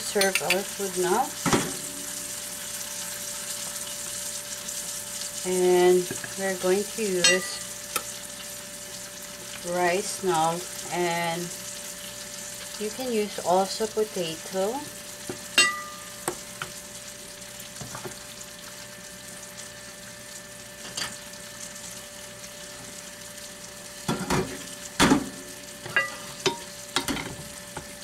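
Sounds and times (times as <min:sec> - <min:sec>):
oil sizzling in a frying pan: 0:00.0 - 0:28.0
spoon clinking against dishes: 0:00.2 - 0:00.6, 0:07.2 - 0:08.1, 0:15.6 - 0:16.1, 0:25.9 - 0:27.3.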